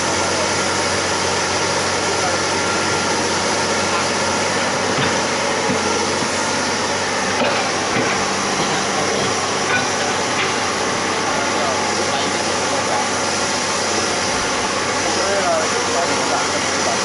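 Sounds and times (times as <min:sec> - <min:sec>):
diesel engine running: 0:00.0 - 0:17.0
sharp knocks and clanks: 0:04.8 - 0:06.7, 0:07.3 - 0:10.8.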